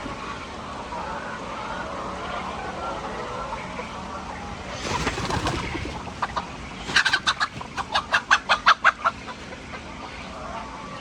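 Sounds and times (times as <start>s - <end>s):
chicken clucking: 0.9s - 10.7s
noisy rustle: 3.6s - 8.6s.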